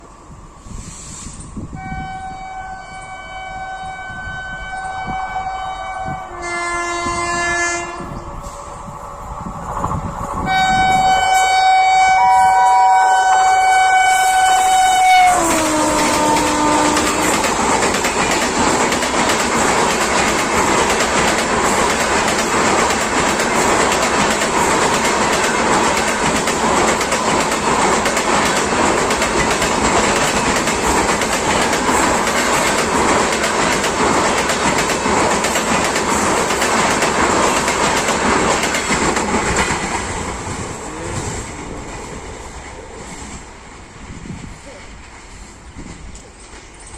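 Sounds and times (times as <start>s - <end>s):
locomotive horn blast: 1.8s - 8.2s, 10.5s - 17.6s
train wheels clattering on rails: 13.4s - 46.9s.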